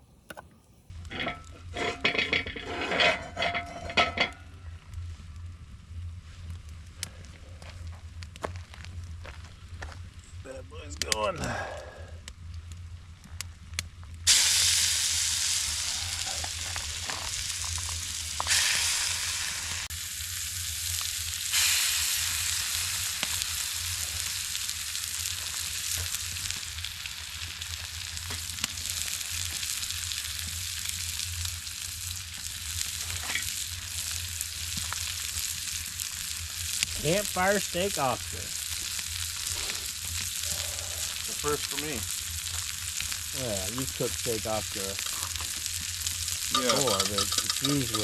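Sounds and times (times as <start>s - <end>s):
steaks sizzling in a pan: 14.3s - 48.0s.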